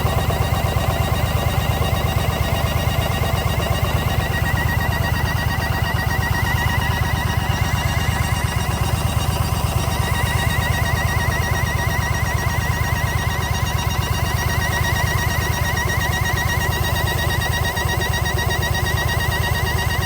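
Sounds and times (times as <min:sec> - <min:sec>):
motorcycle engine idling: 0:00.0 - 0:20.0
wavering high whistle: 0:01.8 - 0:16.7.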